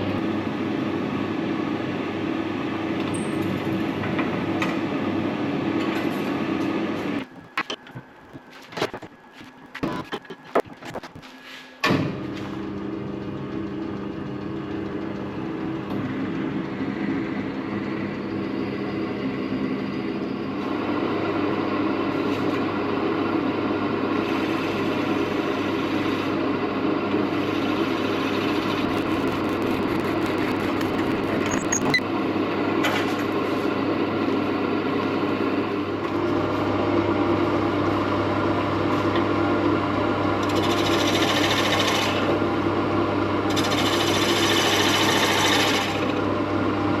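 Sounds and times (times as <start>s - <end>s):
drill bit boring into wood: 28.8s - 32.0s.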